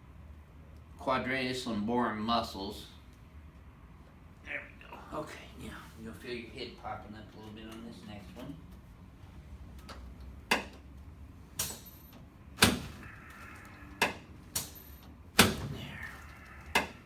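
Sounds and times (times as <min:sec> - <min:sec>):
chiropractic adjustment clacks: 0:09.7 - 0:17.0.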